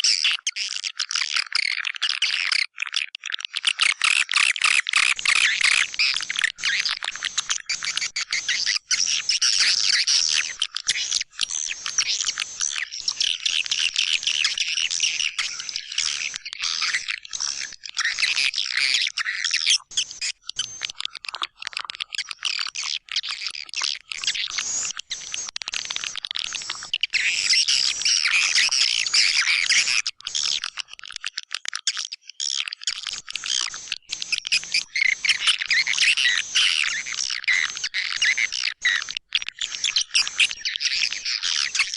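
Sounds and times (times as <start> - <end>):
swiftlets chirping and twittering: 33.6 - 41.9.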